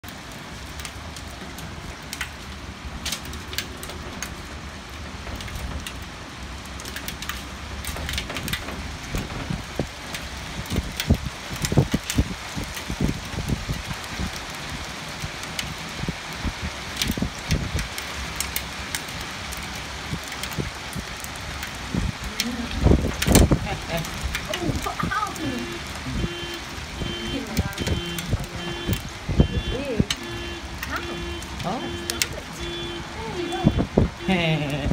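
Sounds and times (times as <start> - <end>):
hailstones pelting hard surfaces: 0.0 - 34.9
rain-like hiss: 0.0 - 34.9.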